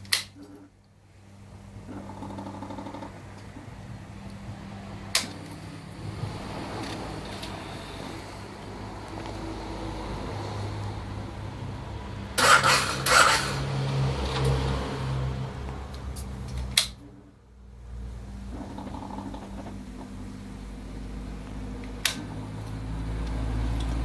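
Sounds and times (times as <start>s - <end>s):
motorcycle starter whirring: 12.4s - 13.7s.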